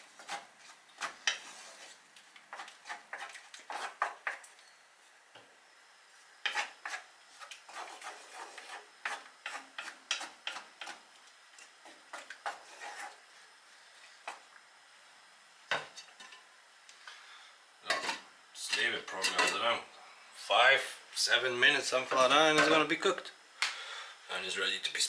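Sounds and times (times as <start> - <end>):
utensil stirring beans in a pan: 0.0 - 19.7.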